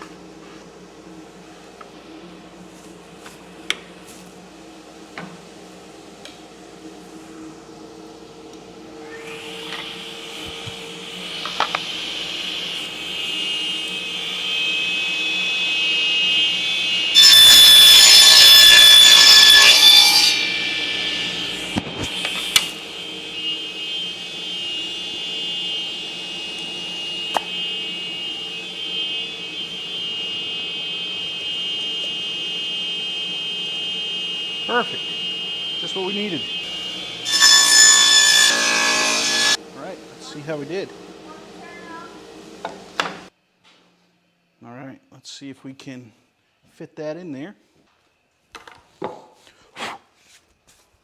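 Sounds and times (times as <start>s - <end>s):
power tool motor whining: 9.0s - 39.6s
power tool cutting into wood: 9.1s - 23.2s, 36.7s - 39.6s.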